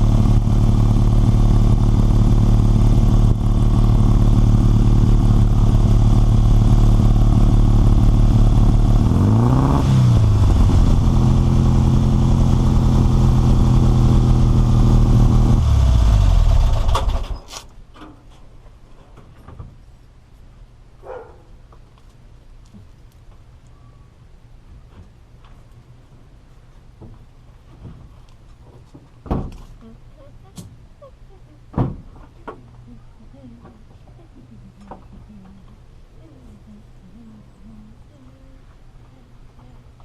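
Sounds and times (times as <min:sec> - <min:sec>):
car engine idling and revving: 0:00.0 - 0:17.4.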